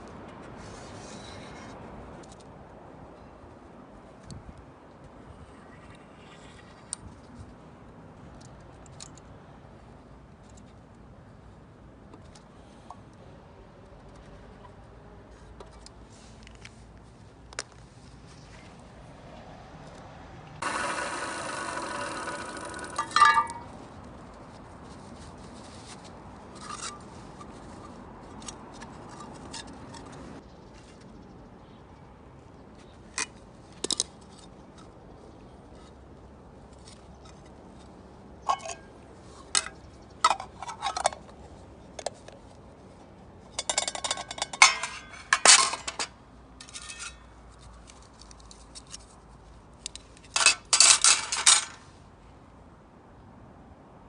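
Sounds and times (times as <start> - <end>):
metallic clinks of camp cookware: 22.9 - 23.7, 38.5 - 38.9, 43.6 - 47.2.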